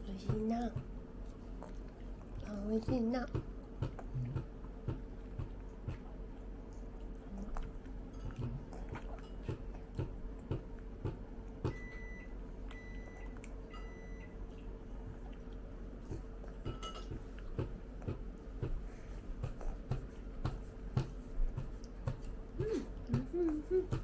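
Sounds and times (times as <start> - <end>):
faint steady hum: 0.0 - 24.0
chewing: 1.2 - 11.0, 12.7 - 18.2
appliance beeps: 11.7 - 14.4.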